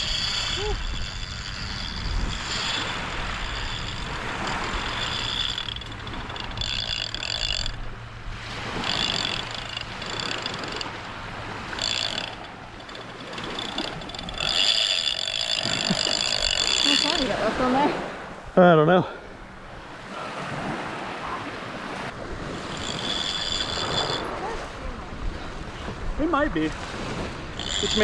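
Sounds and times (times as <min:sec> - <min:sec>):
high buzzing: 0:00.0 - 0:18.6, 0:22.6 - 0:24.4, 0:27.5 - 0:28.0
wind buffeting microphone: 0:00.0 - 0:18.6, 0:19.3 - 0:28.0
surf washing on beach: 0:19.7 - 0:28.0.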